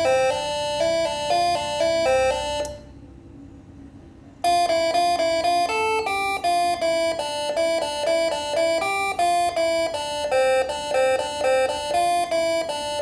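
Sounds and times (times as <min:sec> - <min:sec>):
multi-trumpet horn melody: 0:00.0 - 0:02.7.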